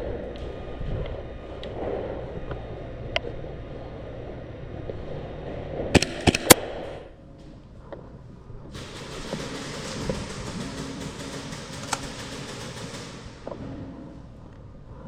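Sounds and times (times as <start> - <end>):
airsoft gun shots: 6.0 - 6.7, 8.8 - 14.2.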